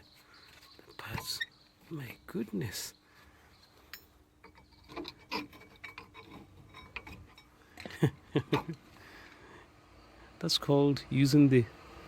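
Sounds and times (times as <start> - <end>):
brake pads scraping and clinking metal: 3.8 - 8.9.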